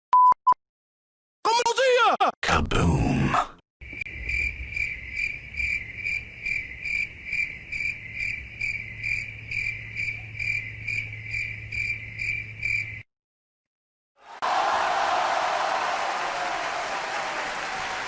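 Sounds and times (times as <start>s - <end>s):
crickets chirping: 3.8s - 13.1s.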